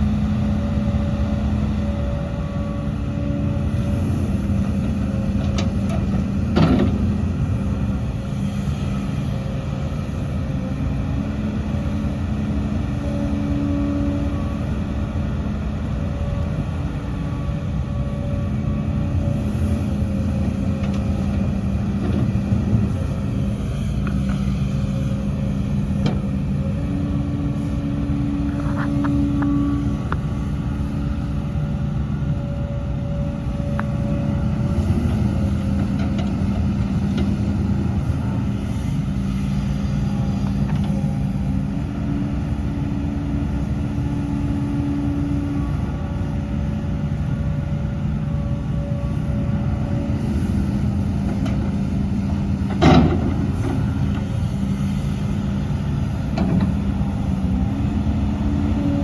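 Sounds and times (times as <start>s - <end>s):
excavator diesel engine running: 0.0s - 59.0s.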